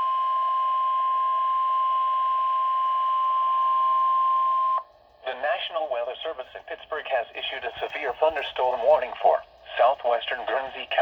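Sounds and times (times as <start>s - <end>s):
long steady alarm tone: 0.0s - 5.2s.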